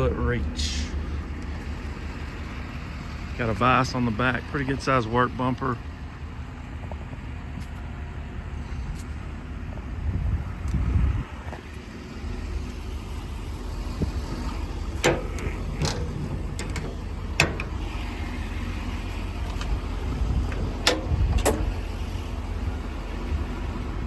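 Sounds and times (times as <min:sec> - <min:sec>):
diesel truck idling: 0:00.0 - 0:24.0
sharp clicks and knocks: 0:14.9 - 0:18.0, 0:19.4 - 0:19.8, 0:20.4 - 0:21.8.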